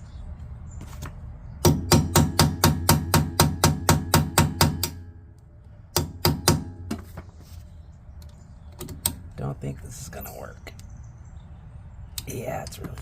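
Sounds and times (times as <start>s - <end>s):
hammer striking metal: 1.6s - 5.2s, 5.9s - 7.1s.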